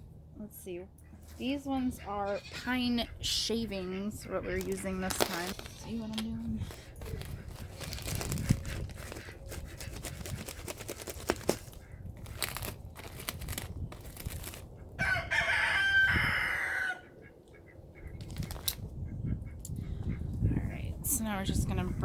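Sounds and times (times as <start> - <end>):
pine shavings rustling and clicking: 4.6 - 14.7
rooster crowing: 15.0 - 17.2.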